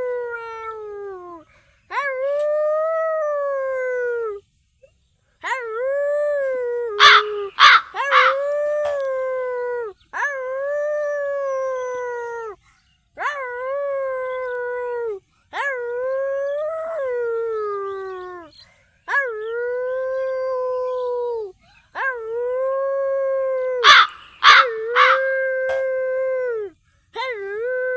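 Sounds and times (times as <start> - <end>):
dog howling: 5.4 - 12.6, 13.2 - 26.7
dog barking: 7.0 - 8.4, 23.8 - 25.8.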